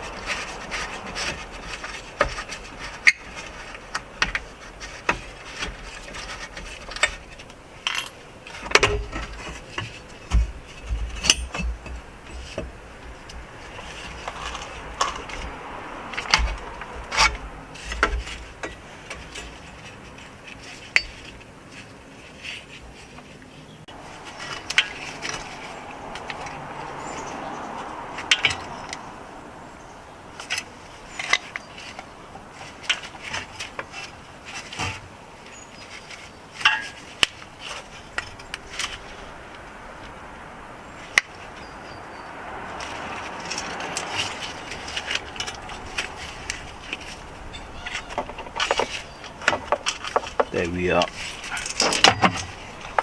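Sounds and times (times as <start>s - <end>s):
metal tools clicking and scraping: 0.0s - 23.2s, 24.2s - 29.1s, 30.3s - 39.6s, 42.7s - 53.0s.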